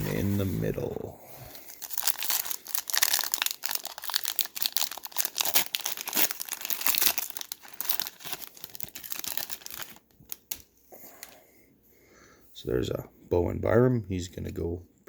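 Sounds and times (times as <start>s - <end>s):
foil wrapper crinkling: 1.6s - 10.7s.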